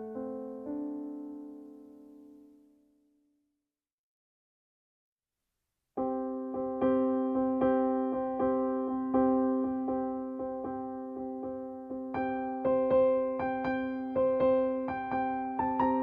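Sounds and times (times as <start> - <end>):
gentle keyboard music: 0.0 - 2.8, 6.0 - 16.0.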